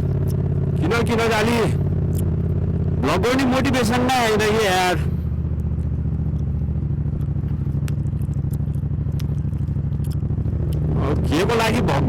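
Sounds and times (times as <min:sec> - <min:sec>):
engine rumble with fast flutter: 0:00.0 - 0:12.0
faint clicks: 0:05.5 - 0:10.9.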